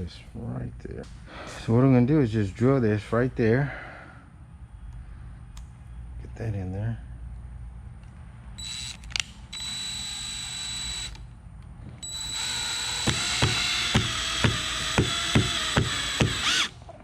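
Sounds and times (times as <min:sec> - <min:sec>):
cordless drill running: 0:08.6 - 0:11.2, 0:12.0 - 0:16.8
regular ratcheting click: 0:12.0 - 0:16.7.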